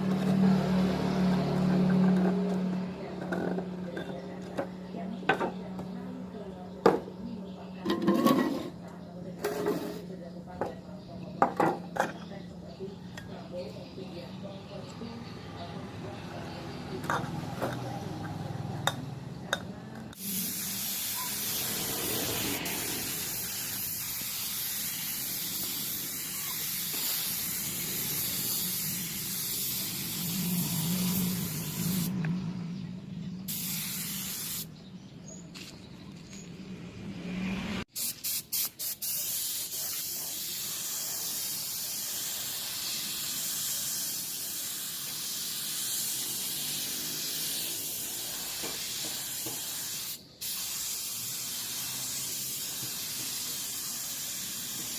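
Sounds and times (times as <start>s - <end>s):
pressurised spray hissing: 20.1s - 32.1s, 33.4s - 34.7s, 37.9s - 54.9s.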